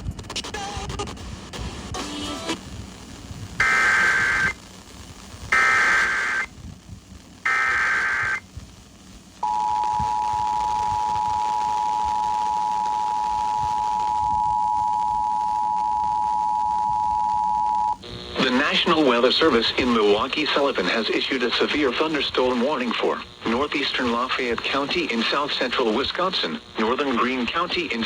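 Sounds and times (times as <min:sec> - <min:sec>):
digital header tone bursts: 0:03.6 - 0:04.6, 0:05.6 - 0:06.5, 0:07.5 - 0:08.4.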